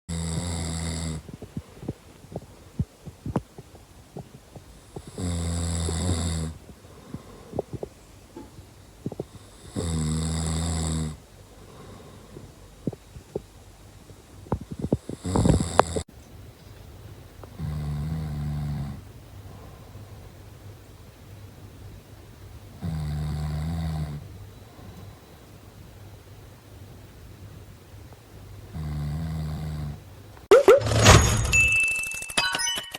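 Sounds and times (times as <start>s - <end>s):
cat snoring: 0.1s - 1.9s, 4.7s - 7.9s, 9.1s - 12.5s, 14.5s - 16.1s, 17.5s - 19.9s, 22.8s - 25.3s, 28.7s - 30.1s.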